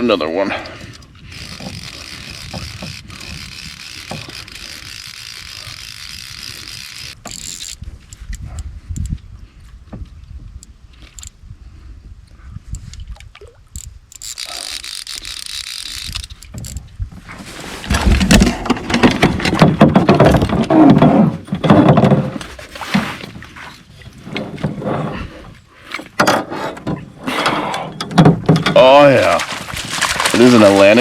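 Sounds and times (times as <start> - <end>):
fish splashing and thrashing: 0.8 - 8.5, 12.8 - 20.7, 28.8 - 31.0.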